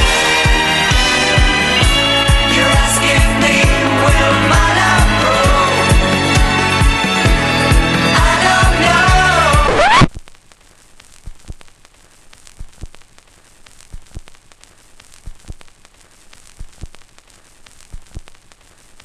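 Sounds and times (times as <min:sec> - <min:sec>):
vinyl record hiss: 0:00.0 - 0:19.0
vinyl record clicks: 0:09.7 - 0:19.0.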